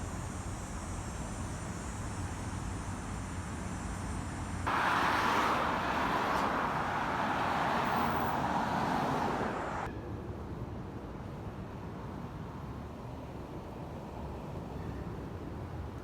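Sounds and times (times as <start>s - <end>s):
street noise rushing hiss: 0.0s - 9.9s.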